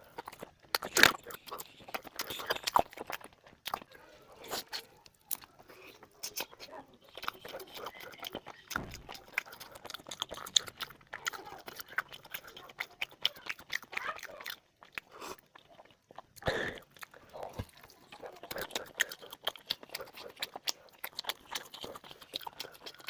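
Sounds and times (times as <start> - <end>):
chewing mouth clicks and smacks: 0.0 - 23.0.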